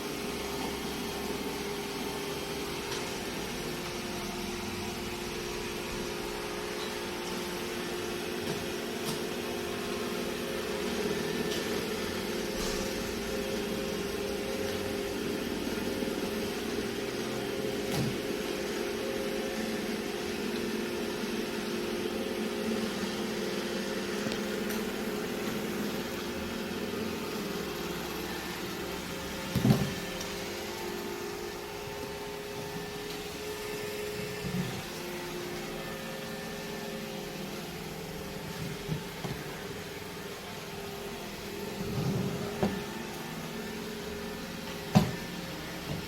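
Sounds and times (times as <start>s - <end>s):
robot vacuum motor hum: 13.4s - 46.0s.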